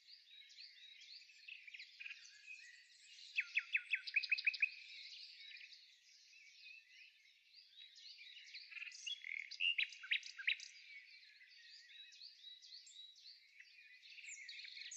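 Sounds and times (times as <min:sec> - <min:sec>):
small birds chirping: 0:00.0 - 0:14.9.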